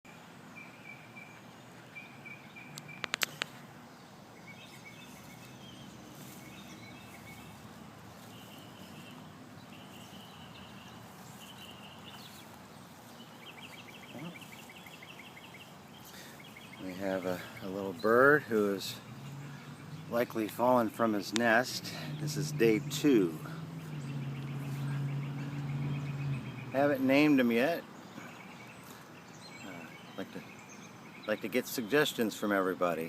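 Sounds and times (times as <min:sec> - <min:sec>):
faint birdsong: 0:00.0 - 0:33.0
sharp clicks: 0:02.7 - 0:03.6.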